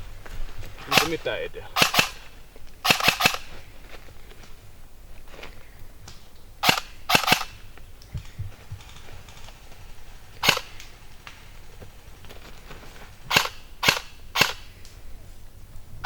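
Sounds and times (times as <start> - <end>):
airsoft gun shots: 0.8 - 3.6, 6.6 - 7.7, 10.4 - 10.9, 13.3 - 14.8
soft low thumps: 8.1 - 9.0.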